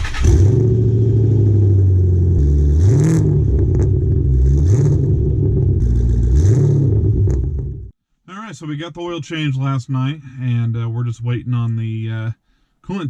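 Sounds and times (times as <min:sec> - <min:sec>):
car engine revving and idling: 0:00.0 - 0:07.9.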